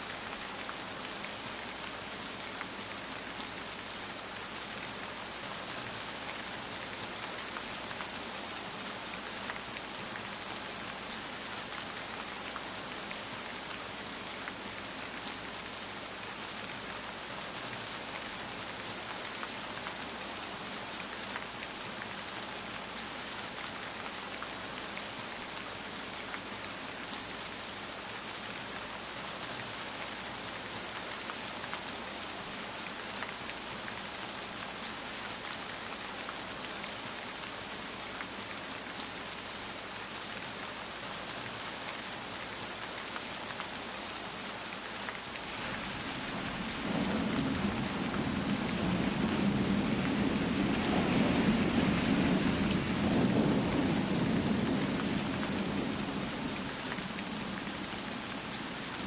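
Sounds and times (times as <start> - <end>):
rain falling: 0.0 - 59.0
low roll of thunder: 45.5 - 58.6.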